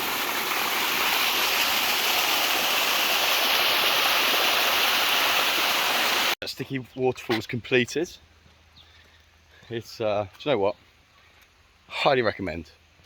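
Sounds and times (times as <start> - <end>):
waterfall rushing: 0.0 - 6.4.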